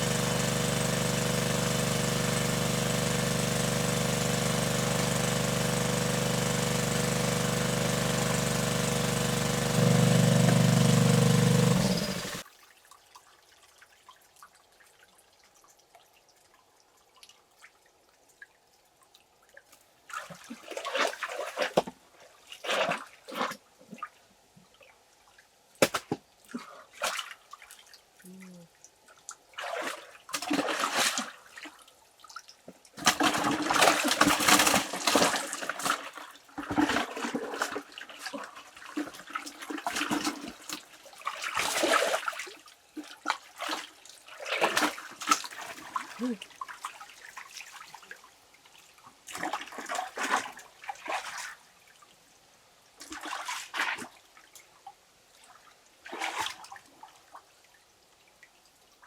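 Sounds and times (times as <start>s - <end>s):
motor hum: 0.0s - 12.4s
short water splashes: 29.5s - 31.7s, 33.0s - 47.9s, 49.3s - 51.6s, 53.0s - 54.2s.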